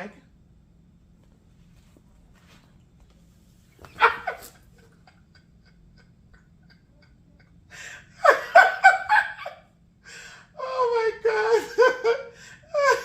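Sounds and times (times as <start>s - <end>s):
woman laughing: 3.8s - 9.7s, 10.6s - 13.0s
woman exclaiming: 10.6s - 12.2s.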